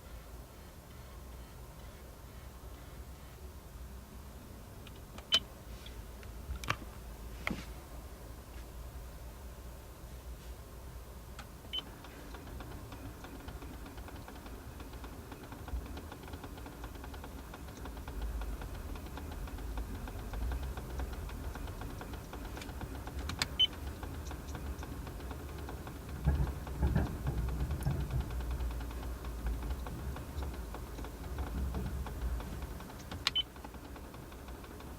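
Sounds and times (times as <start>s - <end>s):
low cabin hum: 0.0s - 34.9s
fast faint motor ticking: 11.7s - 34.9s.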